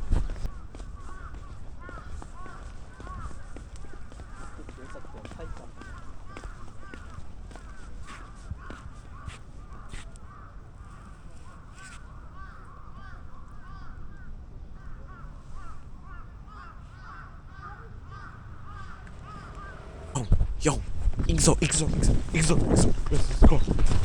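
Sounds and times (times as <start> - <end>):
birds calling: 0.0 - 24.0
low background rumble: 15.8 - 24.0.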